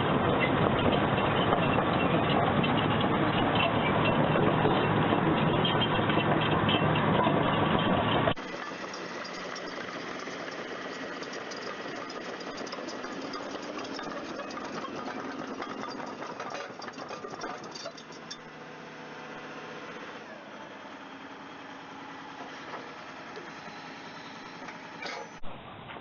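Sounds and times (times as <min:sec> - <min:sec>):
diesel engine rattling: 0:00.0 - 0:25.4.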